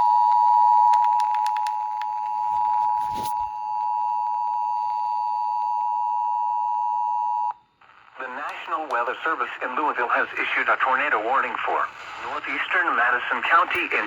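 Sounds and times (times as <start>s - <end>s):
static crackle: 7.8s - 14.0s.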